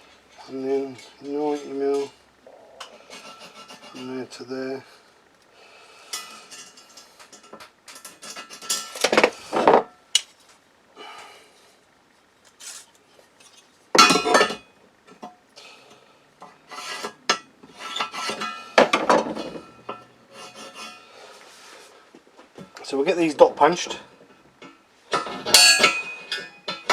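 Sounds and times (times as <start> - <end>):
metal clinking and scraping: 2.7 - 4.4, 6.1 - 9.9, 16.4 - 21.6, 24.3 - 26.9.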